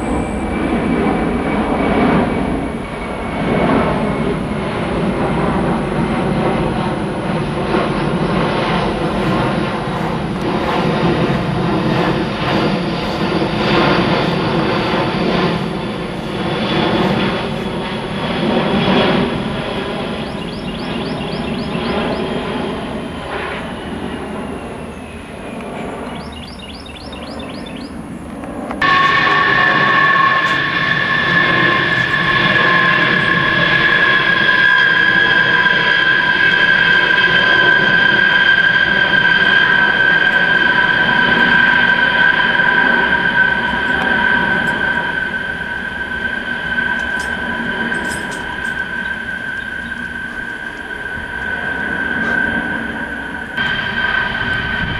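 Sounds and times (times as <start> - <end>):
faint high whine: 0.0 - 54.9
military aircraft flying overhead: 0.0 - 54.9.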